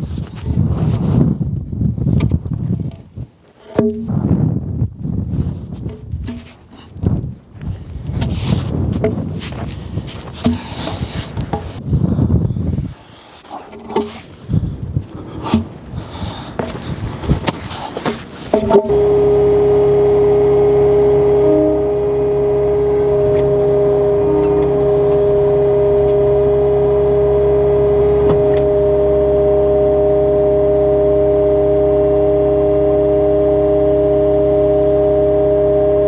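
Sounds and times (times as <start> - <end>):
steady whine: 5.9 - 36.0
diesel engine running: 13.8 - 36.0.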